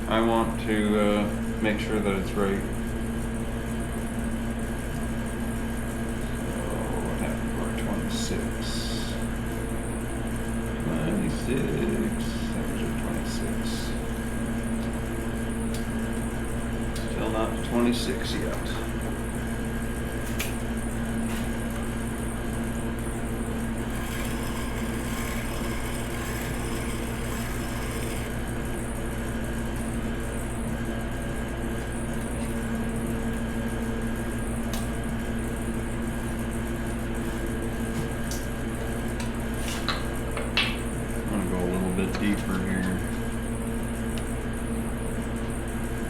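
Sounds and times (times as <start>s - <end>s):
grinder motor humming: 0.0s - 46.0s.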